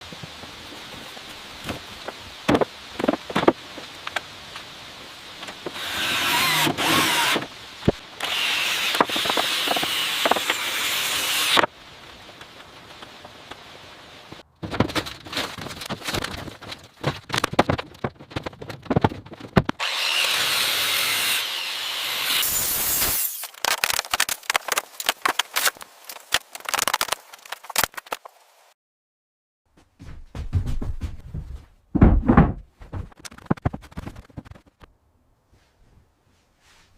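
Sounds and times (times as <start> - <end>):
quick knocks and rattles: 14.6 - 19.8, 30.0 - 34.9
power tool running: 19.8 - 23.4
sharp knocks: 30.0 - 33.8.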